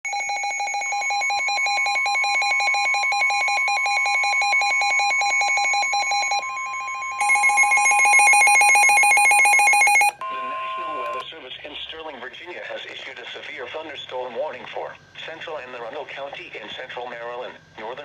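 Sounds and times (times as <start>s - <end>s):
fast-pulsing electronic alarm beep: 0.1s - 10.1s.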